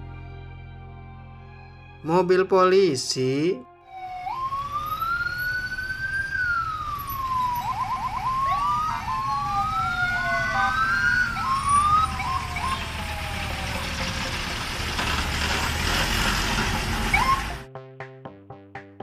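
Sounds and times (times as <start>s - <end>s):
toy police siren wailing: 3.8s - 14.8s, 17.1s - 17.6s.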